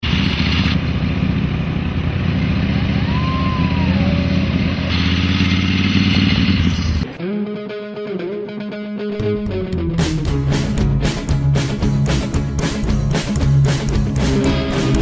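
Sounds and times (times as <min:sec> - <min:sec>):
engine running: 0:00.0 - 0:07.2, 0:10.2 - 0:15.0.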